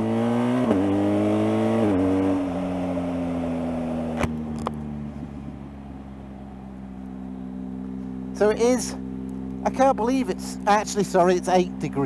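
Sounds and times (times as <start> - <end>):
motorcycle engine: 0.0 - 12.0
sharp click: 4.2 - 4.8.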